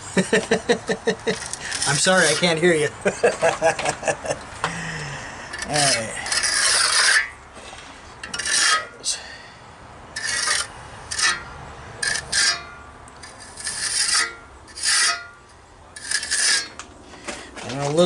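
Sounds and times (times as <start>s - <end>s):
trowel scraping wet cement: 1.4s - 2.8s, 5.5s - 7.4s, 8.2s - 9.0s, 10.2s - 11.4s, 12.0s - 15.4s, 16.0s - 16.8s.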